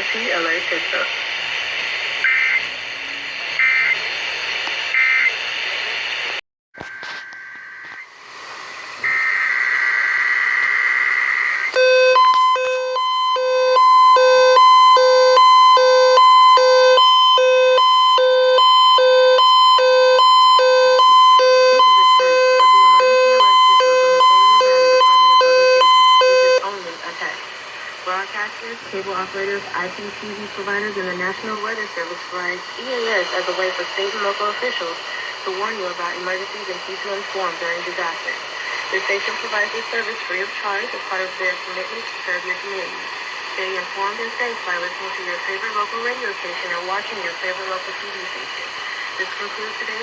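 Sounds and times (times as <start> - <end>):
high data bursts: 9.1 - 26.6
steady high data tone: 9.1 - 26.7.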